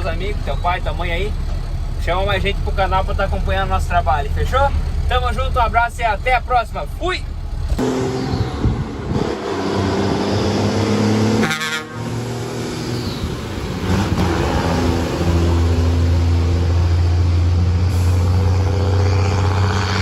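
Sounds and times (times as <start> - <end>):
truck diesel engine running: 0.0 - 9.2.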